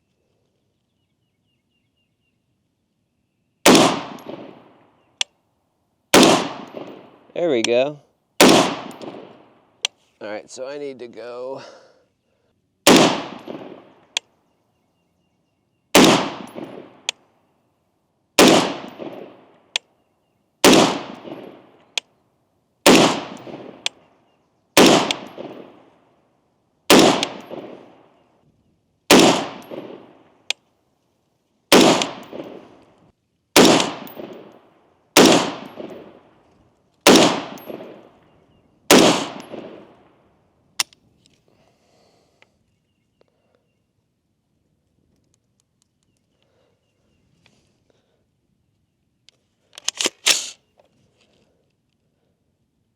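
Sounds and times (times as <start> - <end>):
rifle shots: 3.6 - 4.9, 6.1 - 7.6, 8.4 - 9.6, 12.8 - 14.1, 15.9 - 17.1, 18.4 - 19.8, 20.6 - 22.0, 22.8 - 24.0, 24.8 - 26.0, 26.9 - 28.2, 29.1 - 30.3, 31.7 - 32.8, 33.6 - 36.4, 37.0 - 38.2, 38.9 - 40.2.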